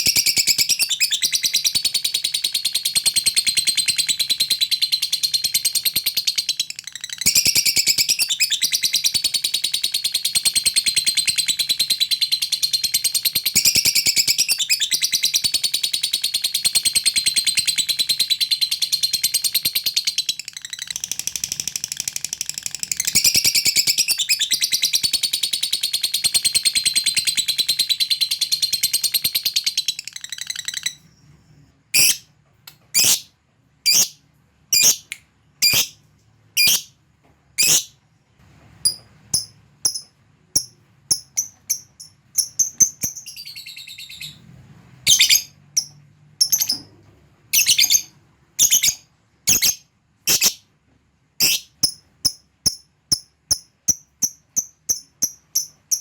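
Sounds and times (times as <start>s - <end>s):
bird chattering trill: 33.9s - 34.2s, 36.6s - 36.9s
bird sharp chirps: 33.9s - 34.2s, 34.8s - 36.0s, 36.6s - 37.0s, 38.9s - 44.4s.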